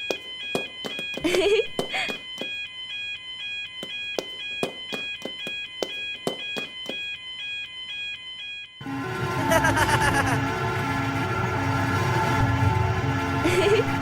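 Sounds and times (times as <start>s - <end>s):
level-crossing warning bell: 0.0s - 14.0s.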